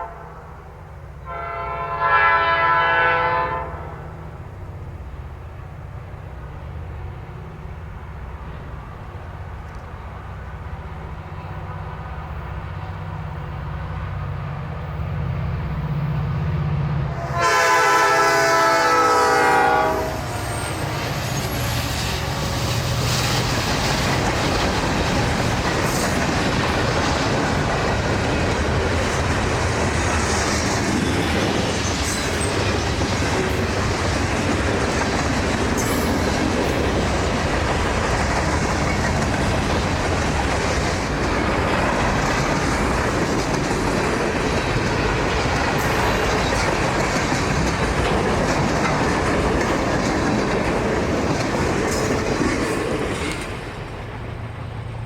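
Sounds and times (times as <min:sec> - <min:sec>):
train horn blast: 0:00.0 - 0:04.2, 0:17.1 - 0:21.4
diesel locomotive engine running: 0:04.3 - 0:55.0
train wheels clattering on rails: 0:17.4 - 0:54.7.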